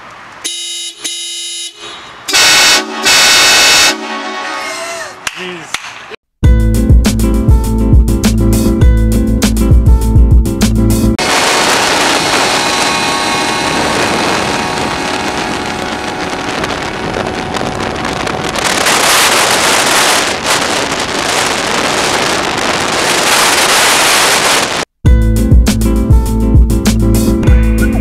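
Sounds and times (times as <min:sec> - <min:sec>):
wind rushing over microphone: 0:11.2 - 0:24.9.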